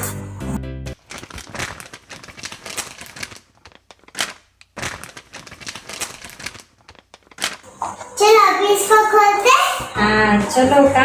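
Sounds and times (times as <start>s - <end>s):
packaging crackling and clicking: 1.0s - 7.9s.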